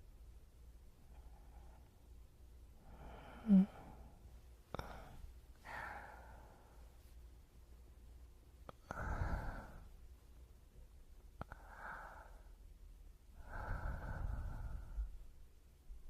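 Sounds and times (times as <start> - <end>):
person breathing close to microphone: 2.8 - 7.2, 8.7 - 10.0, 11.4 - 12.7, 13.3 - 15.4.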